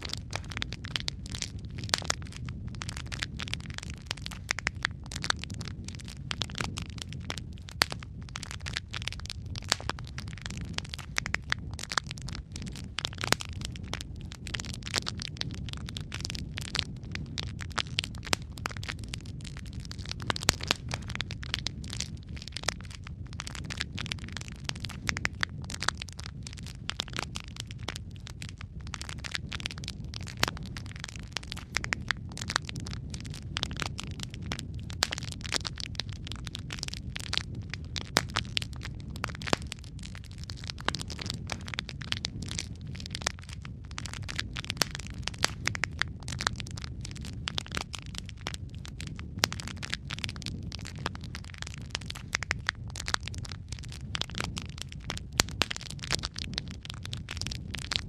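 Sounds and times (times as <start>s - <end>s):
burning logs crackling and popping: 0.0s - 58.0s
fire flames rumbling: 0.0s - 58.0s.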